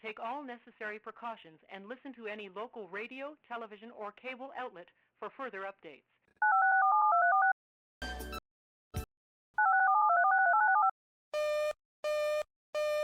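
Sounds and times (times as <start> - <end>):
telephone busy signal: 6.4 - 7.6, 9.6 - 13.0
telephone keypad beeps: 6.4 - 7.6, 9.6 - 10.9.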